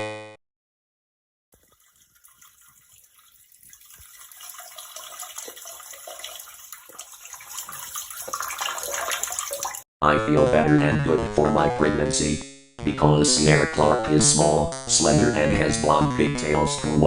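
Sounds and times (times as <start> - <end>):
stream of liquid splashing: 1.6 - 9.9.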